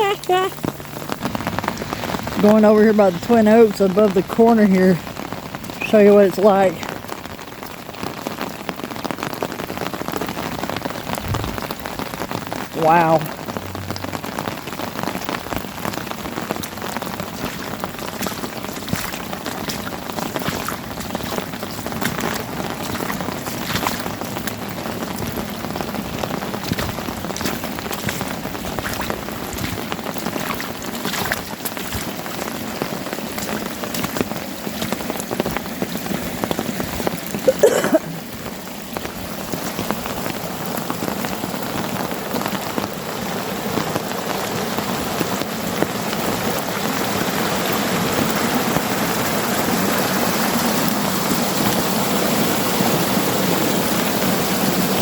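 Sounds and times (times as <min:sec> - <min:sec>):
rain falling: 0:00.0 - 0:55.0
wavering pitched sound: 0:13.5 - 0:14.6.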